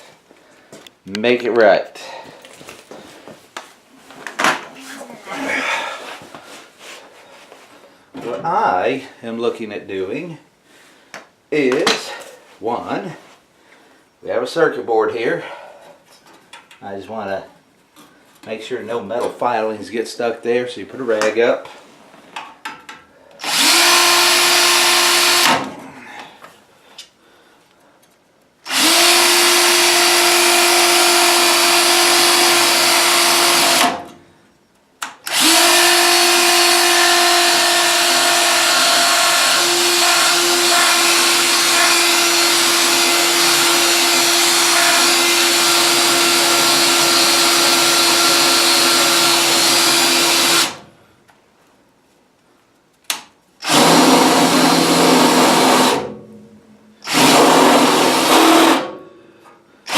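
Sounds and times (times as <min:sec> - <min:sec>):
power drill drilling sheet metal: 0:23.4 - 0:25.7, 0:28.7 - 0:34.1, 0:35.2 - 0:50.9, 0:53.6 - 0:56.2, 0:57.0 - 0:59.0.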